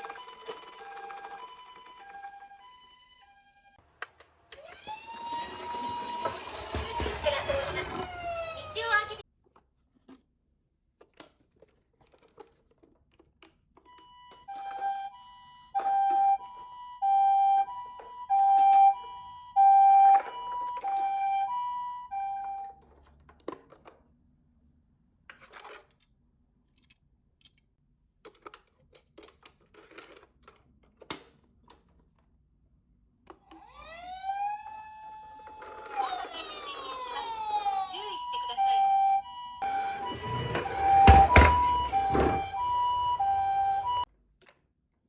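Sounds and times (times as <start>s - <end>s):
toy ambulance two-tone siren: 0.0s - 3.8s, 4.5s - 9.2s, 13.8s - 23.0s, 33.5s - 44.1s
plastic clicks and rattles: 26.7s - 32.0s.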